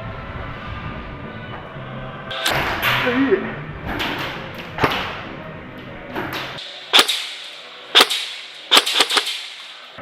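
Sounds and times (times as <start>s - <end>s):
airsoft gun shots: 6.6s - 9.9s.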